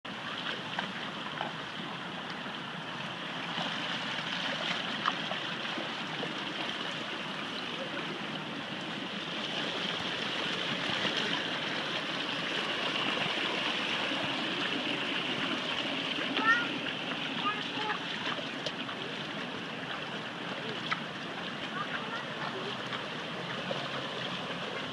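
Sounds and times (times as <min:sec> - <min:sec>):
river water running: 0:00.1 - 0:24.9.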